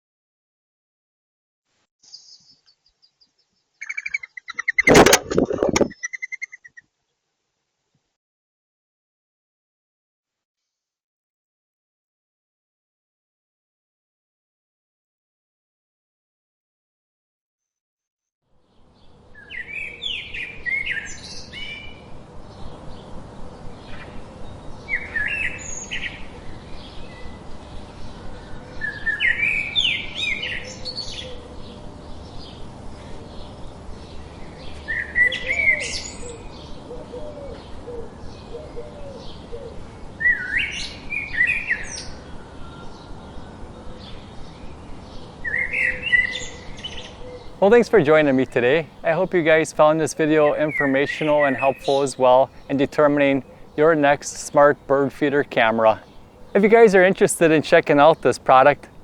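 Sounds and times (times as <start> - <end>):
faint outdoor background: 1.7 - 8.2, 18.4 - 59.0
songbird singing: 2.0 - 6.8, 18.7 - 59.0.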